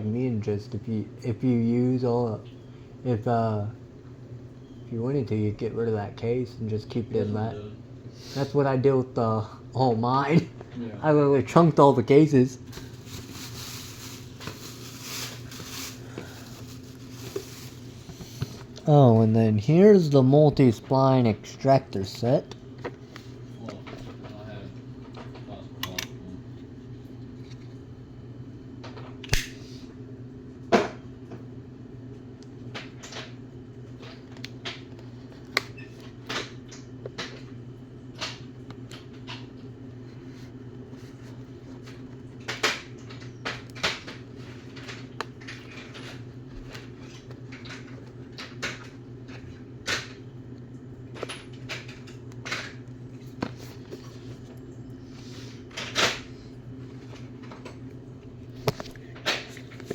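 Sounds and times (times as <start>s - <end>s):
steady low hum: 0.0s - 59.9s
box and plastic packaging handled: 12.6s - 18.8s.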